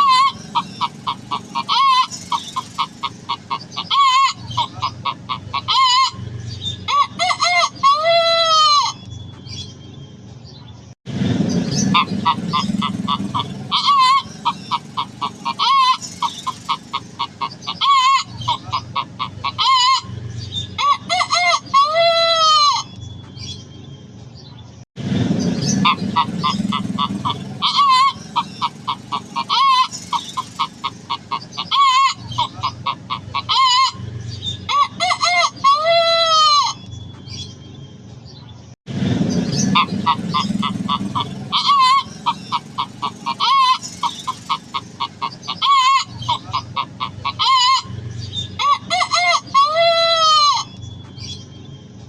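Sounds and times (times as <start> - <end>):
man imitating chicken clucks: 0.0 - 2.1, 12.0 - 16.0, 16.6 - 20.1, 25.9 - 29.9, 34.7 - 36.8, 39.8 - 43.8, 44.5 - 47.9, 48.6 - 50.7.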